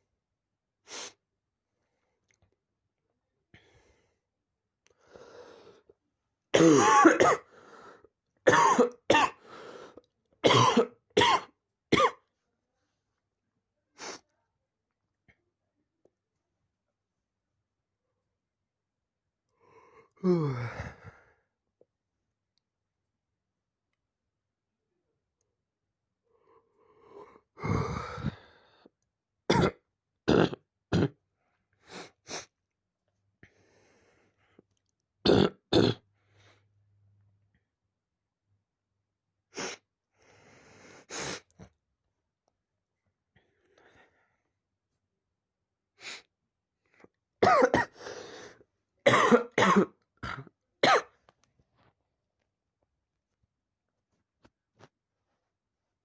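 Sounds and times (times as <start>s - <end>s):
breath: 3.6s - 4.3s, 4.9s - 6.0s, 7.4s - 8.1s, 9.4s - 10.1s, 19.6s - 21.5s, 26.3s - 28.9s, 33.4s - 34.7s, 36.2s - 36.7s, 39.6s - 41.5s, 43.4s - 44.5s, 47.9s - 48.7s
person coughing: 6.6s - 7.5s, 8.5s - 9.4s, 10.4s - 12.2s, 47.4s - 48.0s, 49.1s - 51.1s
throat-clearing cough: 6.6s - 7.5s, 8.5s - 9.4s, 10.5s - 12.3s, 47.4s - 48.0s, 49.1s - 51.2s.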